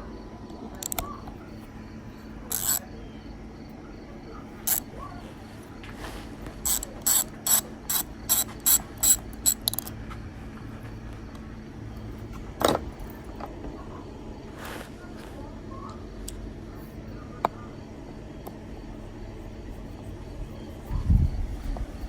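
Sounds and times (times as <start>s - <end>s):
ratchet wrench clicking: 0.8s - 1.0s, 2.5s - 2.8s, 6.6s - 9.9s.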